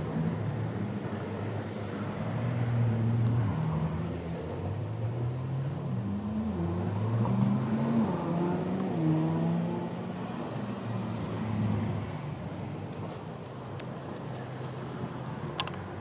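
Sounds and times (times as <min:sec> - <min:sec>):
car engine passing by: 0:05.4 - 0:12.2.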